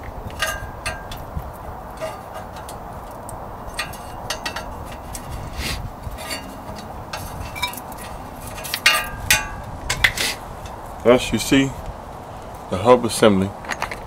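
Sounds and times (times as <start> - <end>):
low background noise: 0.0 - 14.0
metal parts clinking: 0.3 - 1.3, 2.0 - 5.5, 6.2 - 10.4.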